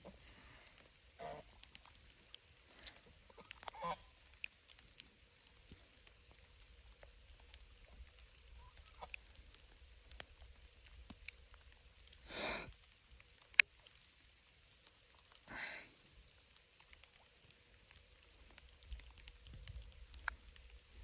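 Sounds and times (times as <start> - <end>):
drips ticking: 0.0 - 12.2
light rain pattering: 0.0 - 21.0.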